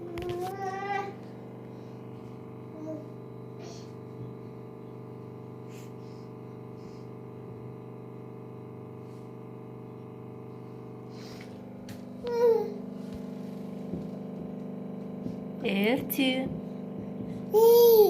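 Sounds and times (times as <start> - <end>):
faint clicks and rustles: 0.0 - 1.0
electrical hum: 0.0 - 18.0.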